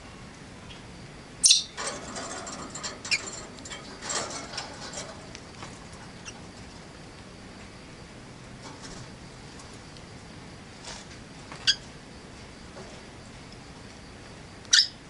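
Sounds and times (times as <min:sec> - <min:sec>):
lovebirds chirping and chattering: 0:01.4 - 0:02.2, 0:05.5 - 0:06.8.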